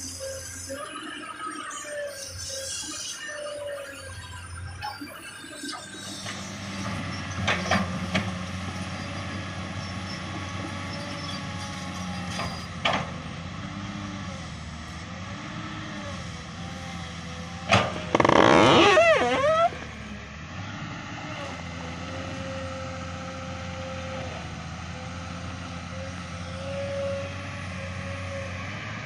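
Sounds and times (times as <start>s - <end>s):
excavator diesel engine running: 5.6s - 29.0s
loud wavering pitched sound: 18.1s - 20.2s.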